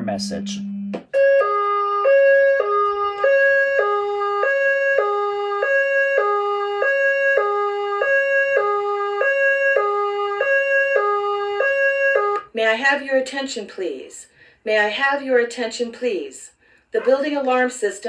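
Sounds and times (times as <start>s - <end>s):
alternating two-tone alarm: 0.4s - 12.5s.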